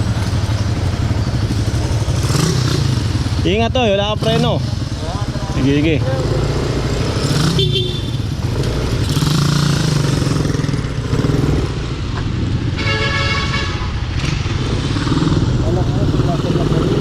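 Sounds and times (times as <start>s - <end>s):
motorcycle engine running: 0.0s - 13.1s
vehicle horn honking: 7.5s - 8.3s, 12.7s - 14.0s.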